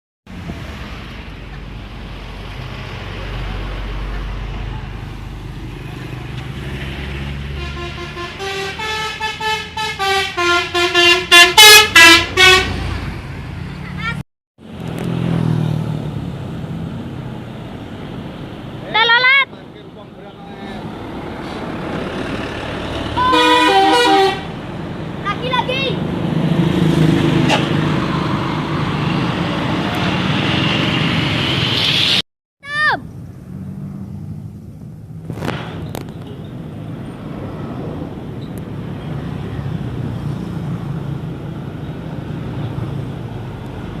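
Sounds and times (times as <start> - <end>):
bus driving past: 0.3 - 32.2, 32.9 - 44.0
musical bus horn playing tune: 7.5 - 13.0, 23.2 - 24.6.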